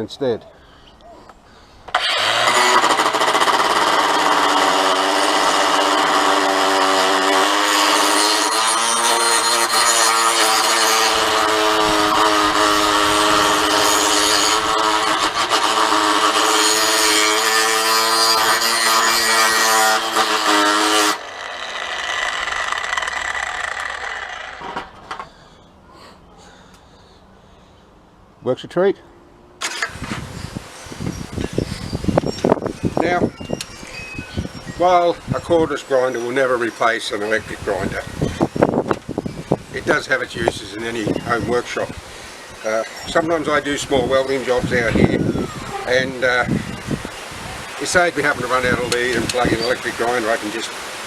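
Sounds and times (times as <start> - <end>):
grinder wheel winding down: 1.9 - 25.2, 29.6 - 30.2, 39.7 - 50.7
angle grinder grinding steel: 1.9 - 25.3, 29.6 - 51.0.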